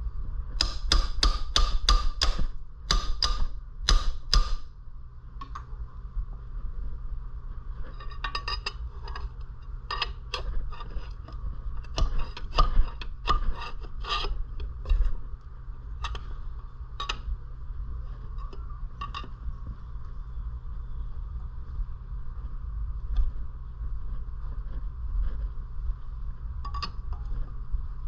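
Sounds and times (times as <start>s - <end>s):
steady low hum: 0.0s - 28.0s
metal tools clicking and scraping: 7.9s - 15.2s.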